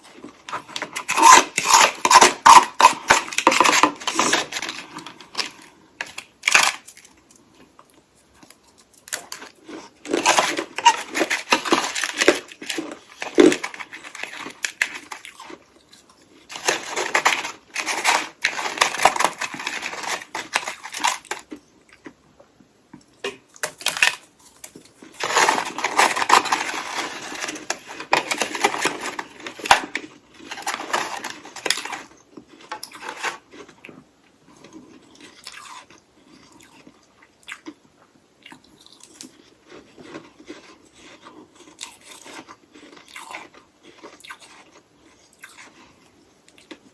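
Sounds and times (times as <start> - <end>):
ice being chewed crunching: 0.0 - 22.2, 23.6 - 37.8, 38.4 - 46.8.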